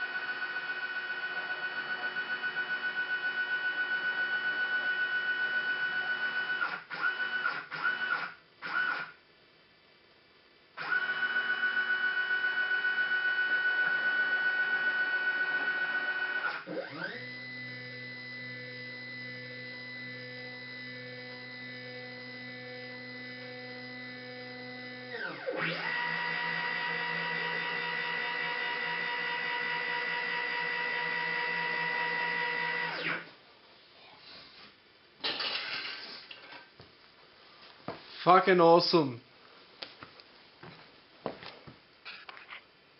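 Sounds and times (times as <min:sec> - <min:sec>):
stepper motors whining: 0:13.5 - 0:33.3.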